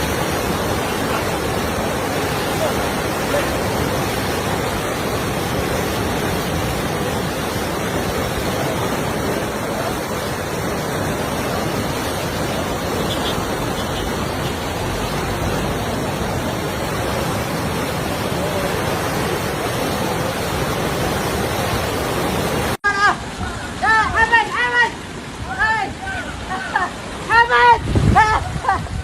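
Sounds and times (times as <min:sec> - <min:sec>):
flood water rushing: 0:00.0 - 0:29.0.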